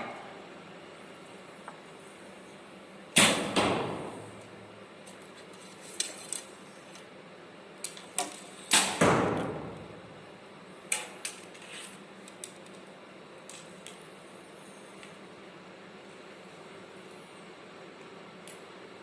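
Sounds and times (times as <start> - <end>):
bow shot cracks: 3.2 - 4.2.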